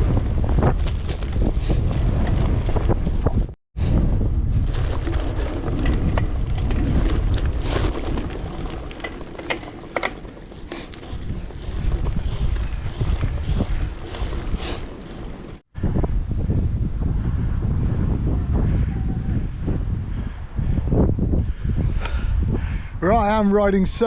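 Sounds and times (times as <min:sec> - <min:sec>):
wind buffeting microphone: 0:00.0 - 0:24.0
bike clicks and rattles: 0:00.1 - 0:03.4, 0:04.5 - 0:15.6.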